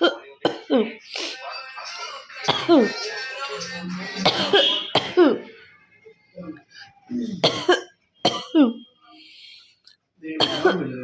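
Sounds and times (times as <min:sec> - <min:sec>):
woman coughing hard: 0:00.0 - 0:00.9, 0:02.5 - 0:02.9, 0:04.2 - 0:05.5, 0:07.4 - 0:08.8, 0:10.4 - 0:10.9.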